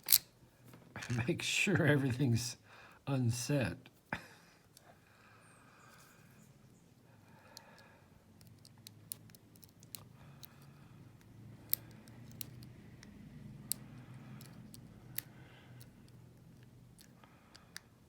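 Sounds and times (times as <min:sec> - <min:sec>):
lock pick metallic clicks: 0:00.0 - 0:00.3, 0:07.6 - 0:17.9.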